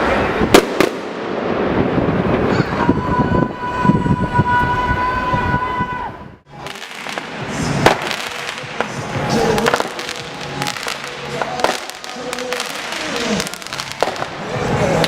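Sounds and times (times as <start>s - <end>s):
fireworks bangs and crackling: 0.0s - 2.8s, 6.6s - 15.0s
music playing: 6.5s - 15.0s.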